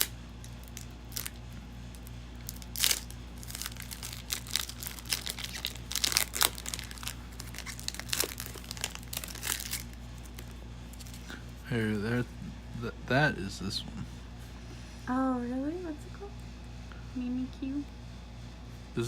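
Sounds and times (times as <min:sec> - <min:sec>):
foil wrapper crinkling and tearing: 0:00.0 - 0:11.3
faint low hum: 0:00.0 - 0:19.0.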